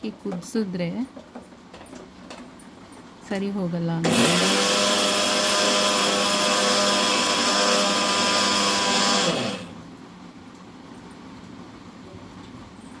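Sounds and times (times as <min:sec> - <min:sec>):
mixer grinder motor hum: 0:04.0 - 0:09.8.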